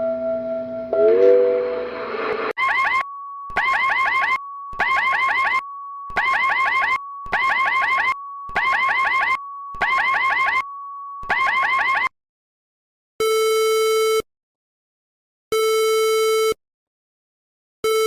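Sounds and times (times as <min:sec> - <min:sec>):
steady high beep: 0:02.6 - 0:11.6
warbling chirps: 0:02.6 - 0:12.1.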